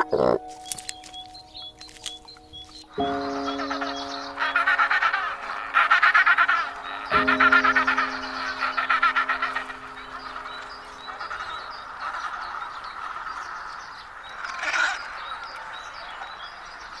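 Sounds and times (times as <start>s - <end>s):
chorus of animal chirps: 0.0s - 17.0s
loud animal call: 3.0s - 15.4s.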